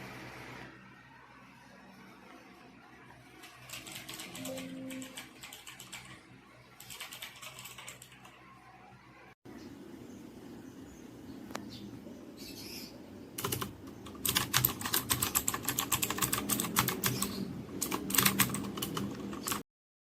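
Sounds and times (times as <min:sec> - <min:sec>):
typing on clicky mechanical keyboard: 0:03.4 - 0:06.2, 0:06.8 - 0:08.4, 0:13.4 - 0:19.6.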